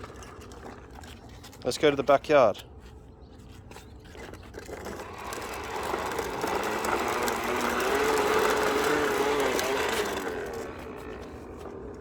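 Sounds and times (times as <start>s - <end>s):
motor whirring hum: 4.6s - 12.0s.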